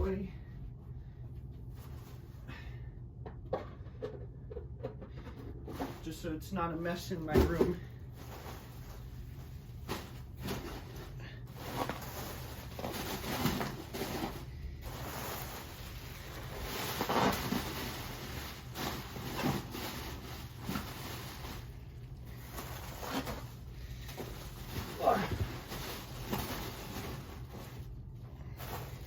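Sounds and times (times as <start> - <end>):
packaging rustling: 8.1 - 29.0.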